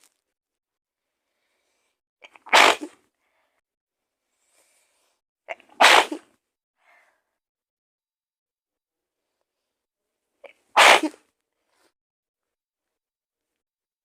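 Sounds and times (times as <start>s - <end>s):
woman sneezing: 2.2s - 3.0s, 5.5s - 6.3s, 10.7s - 11.2s
catch of breath: 6.8s - 7.4s.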